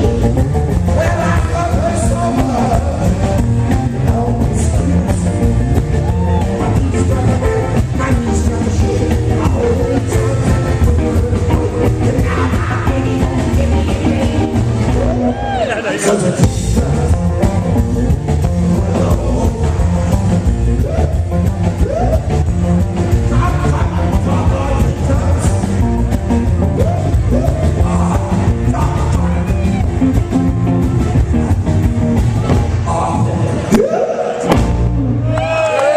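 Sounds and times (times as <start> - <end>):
steady drum beat: 0.0 - 33.1
live rock and roll band: 0.0 - 35.9
person singing: 0.9 - 22.4, 26.8 - 30.1.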